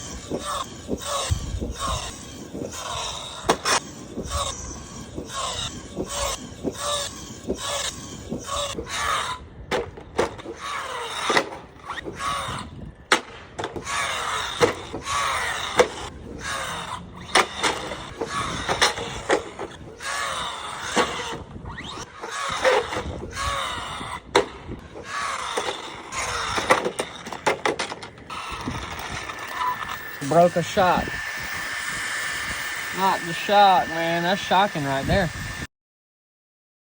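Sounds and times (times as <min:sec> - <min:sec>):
electric motor whining: 0:00.0 - 0:35.7
toy truck knocks and clatters: 0:05.3 - 0:12.5, 0:13.1 - 0:21.4, 0:22.2 - 0:31.6.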